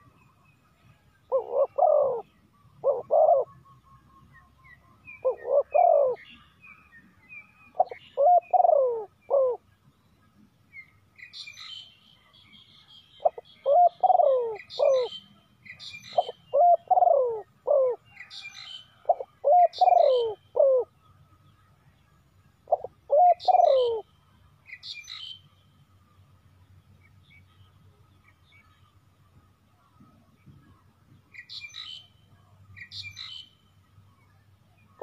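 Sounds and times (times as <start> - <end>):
small birds chirping faintly: 0.0 - 35.0
dove cooing: 1.3 - 3.6, 5.1 - 6.2, 7.8 - 9.6, 13.2 - 15.2, 16.1 - 18.4, 19.0 - 20.9, 22.6 - 24.1.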